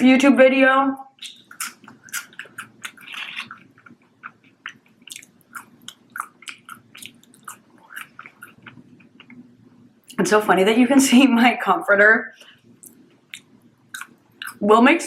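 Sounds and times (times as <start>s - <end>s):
person chewing food: 1.2s - 10.2s, 12.4s - 14.6s.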